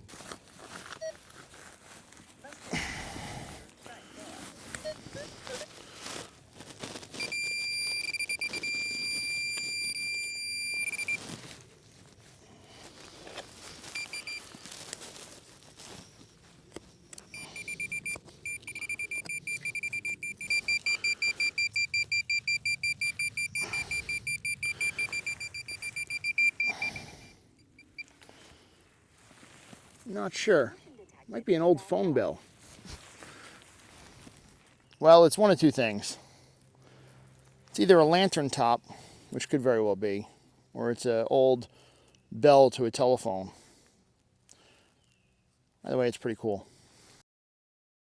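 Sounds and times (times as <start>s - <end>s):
high shrill metal detector tone: 7.2s - 11.3s, 13.9s - 14.5s, 17.2s - 28.1s.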